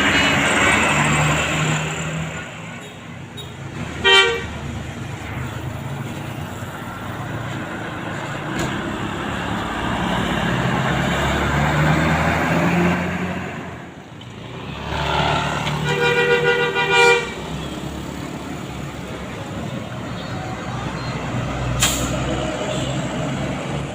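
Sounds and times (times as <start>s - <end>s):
road traffic passing: 0.0s - 23.9s
vehicle horn blast: 4.0s - 4.5s, 15.8s - 17.4s.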